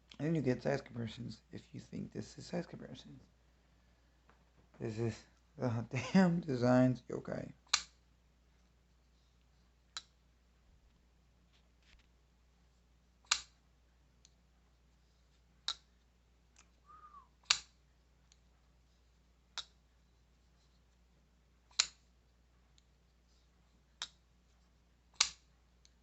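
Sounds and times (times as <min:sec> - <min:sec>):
folding knife clicking: 0:25.2 - 0:25.4.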